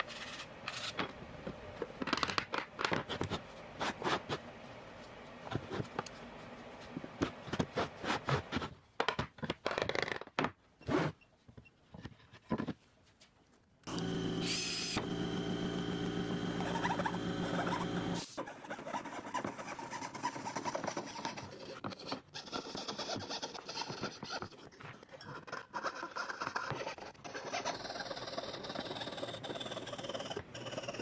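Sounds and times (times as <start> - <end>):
scraping and rustling of hand work: 0.0 - 2.0, 2.9 - 9.0
small motor humming: 13.9 - 18.3.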